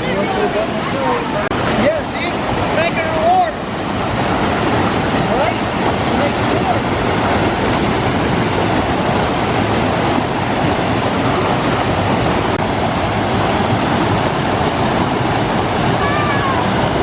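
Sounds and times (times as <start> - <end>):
waterfall rushing: 0.0 - 17.0.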